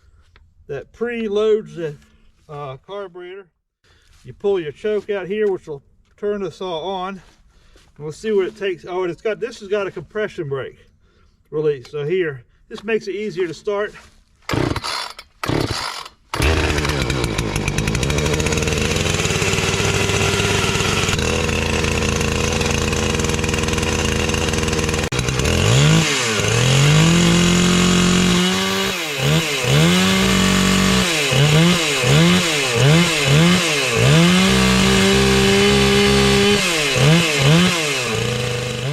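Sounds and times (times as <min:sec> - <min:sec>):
chainsaw starting and revving: 0:14.4 - 0:38.9.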